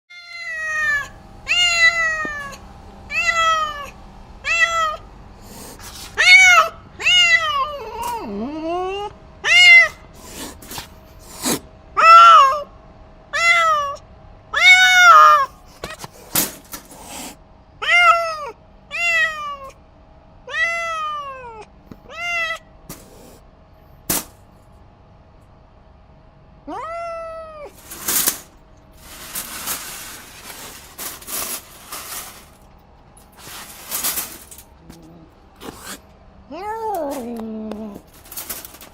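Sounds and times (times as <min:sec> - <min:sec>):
cat meowing loudly: 0:00.1 - 0:05.0, 0:06.1 - 0:08.3, 0:09.4 - 0:10.0, 0:12.0 - 0:12.7, 0:14.6 - 0:15.6, 0:20.5 - 0:23.3.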